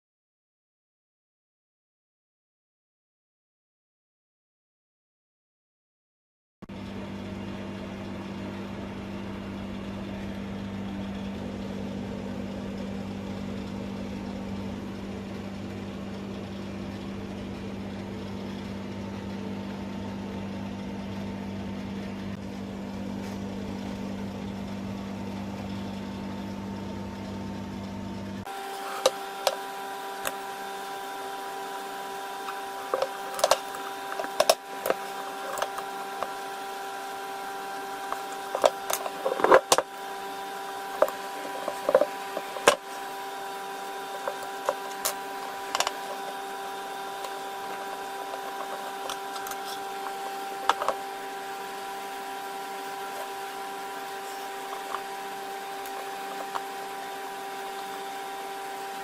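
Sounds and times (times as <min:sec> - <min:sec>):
machine hum: 0:06.6 - 0:59.0
sharp clicks and knocks: 0:32.9 - 0:36.4, 0:38.1 - 0:39.9, 0:41.0 - 0:43.0, 0:44.2 - 0:46.3, 0:47.2 - 0:51.0.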